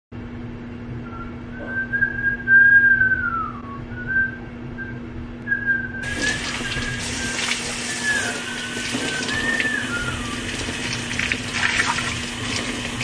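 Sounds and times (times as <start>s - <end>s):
steady low hum: 0.2s - 13.0s
person whistling: 1.0s - 10.9s.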